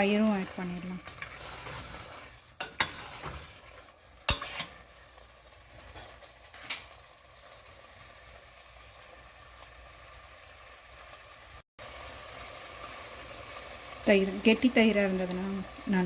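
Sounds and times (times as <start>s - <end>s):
meat sizzling in a pot: 0.0s - 16.0s
metal spoon scraping a pot: 1.0s - 4.8s.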